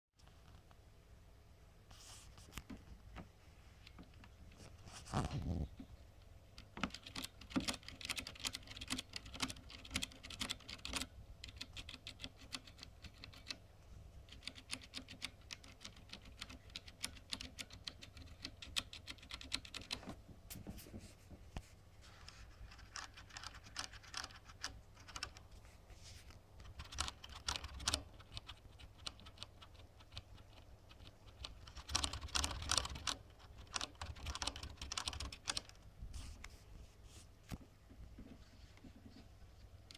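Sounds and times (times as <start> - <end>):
mechanical keyboard switches clattering: 26.7 - 35.7.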